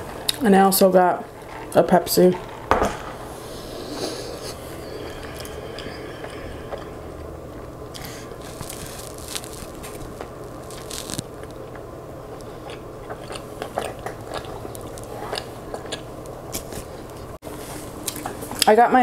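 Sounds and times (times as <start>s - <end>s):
person chewing food: 7.5s - 18.7s
small food crunches: 8.0s - 17.2s.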